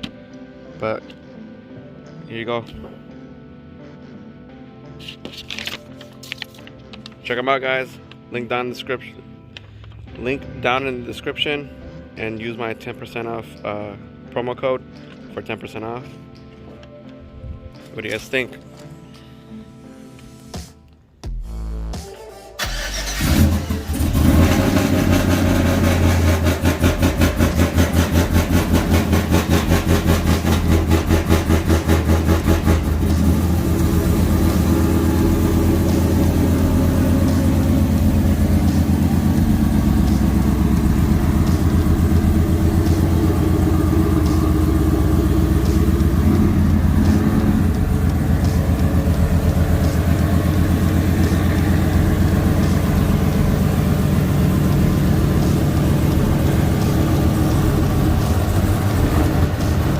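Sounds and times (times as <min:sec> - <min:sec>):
pickup engine starting and running: 0:22.6 - 0:59.9.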